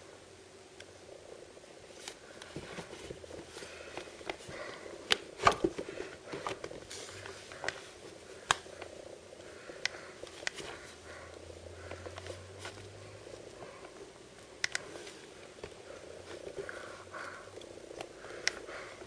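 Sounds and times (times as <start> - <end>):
sharp clicks and taps: 14.6 - 14.9.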